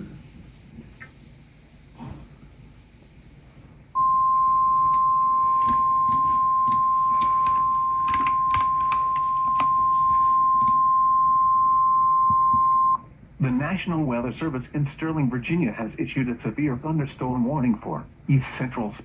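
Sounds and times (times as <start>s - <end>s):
steady alarm tone: 4.0s - 13.0s.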